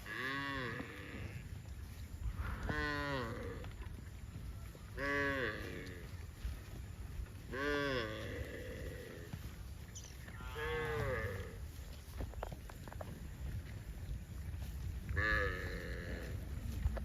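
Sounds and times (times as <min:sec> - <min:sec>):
cows mooing: 0:00.0 - 0:04.0, 0:04.8 - 0:06.4, 0:07.4 - 0:09.5, 0:10.2 - 0:11.8, 0:15.0 - 0:17.0.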